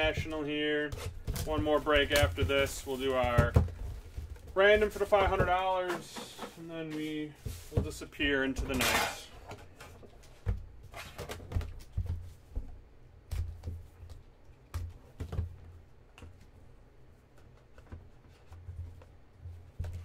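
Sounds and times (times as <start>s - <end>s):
cards handled on a tabletop: 1.0s - 7.8s.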